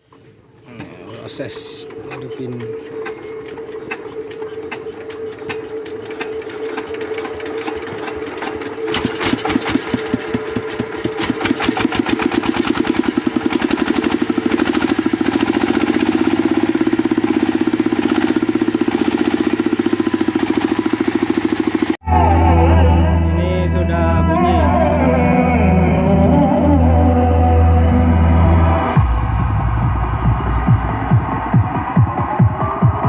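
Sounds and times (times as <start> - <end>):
starter whine: 0.0 - 33.0
diesel engine chugging: 0.1 - 33.0
ticks: 0.7 - 6.9.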